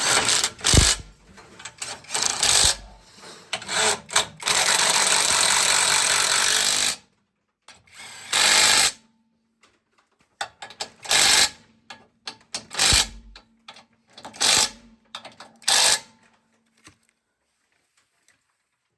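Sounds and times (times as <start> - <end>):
power tool running in bursts: 0.0 - 1.2, 2.1 - 3.0, 12.8 - 13.4.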